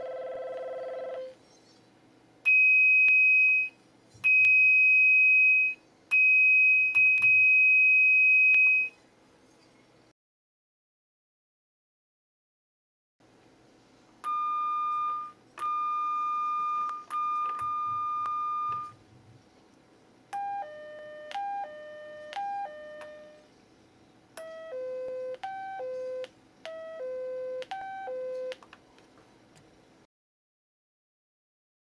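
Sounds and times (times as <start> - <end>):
long high-pitched beeps: 14.2 - 19.0, 20.3 - 23.5, 24.4 - 28.6.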